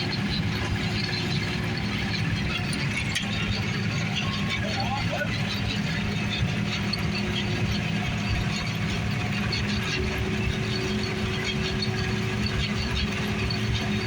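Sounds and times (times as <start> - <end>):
combine harvester drone: 0.0 - 14.0.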